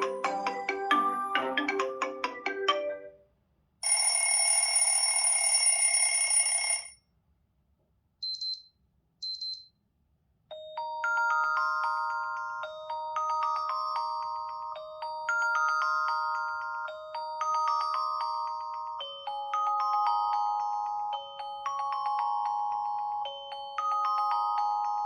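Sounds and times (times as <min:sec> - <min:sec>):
melodic ringtone: 0:00.0 - 0:03.2, 0:10.5 - 0:25.0.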